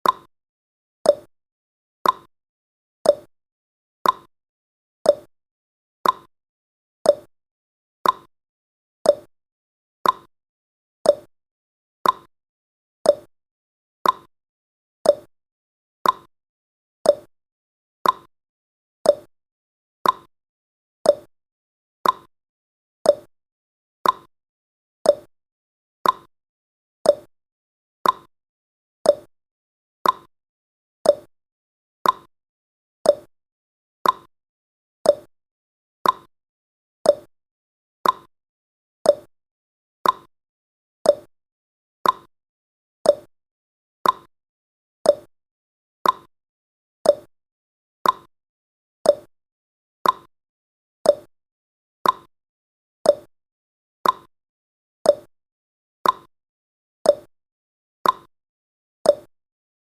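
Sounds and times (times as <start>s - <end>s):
clock ticking: 38.0s - 38.3s, 42.0s - 42.3s, 44.0s - 44.3s.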